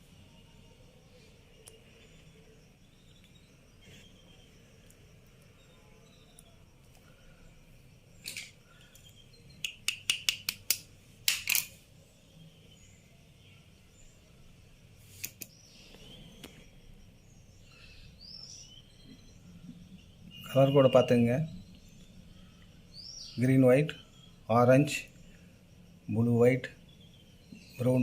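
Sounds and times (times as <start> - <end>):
birds chirping faintly: 0.0 - 28.0.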